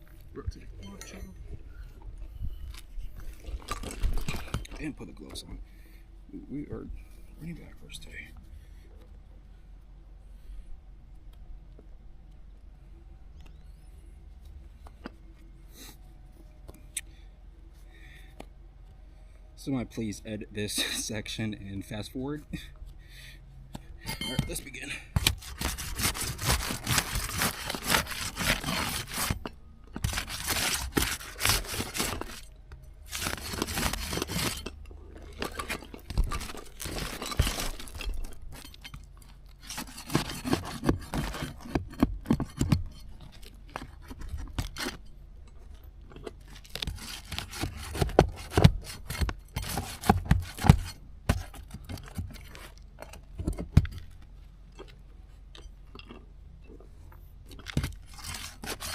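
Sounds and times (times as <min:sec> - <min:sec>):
roof shingles tearing and scraping: 0:03.2 - 0:04.9, 0:25.2 - 0:45.0, 0:46.2 - 0:54.0, 0:57.6 - 0:58.9.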